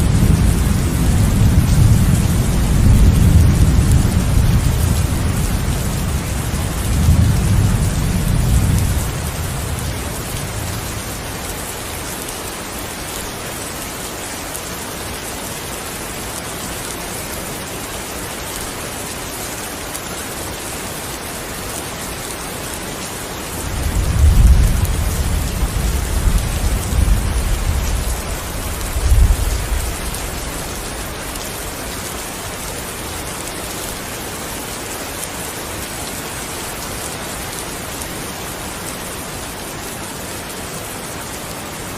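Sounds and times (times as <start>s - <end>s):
rolling thunder: 0.0s - 11.0s, 23.6s - 31.0s
heavy rain: 0.0s - 41.9s.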